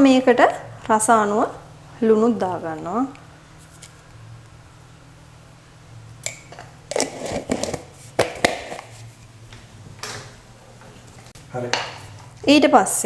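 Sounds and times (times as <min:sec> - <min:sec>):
low steady hum: 0:00.0 - 0:13.0
utensils scraping a bowl: 0:06.9 - 0:09.1.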